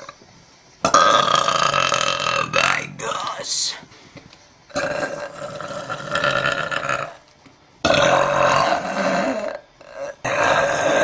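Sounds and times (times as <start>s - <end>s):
woman burping: 4.7s - 7.2s.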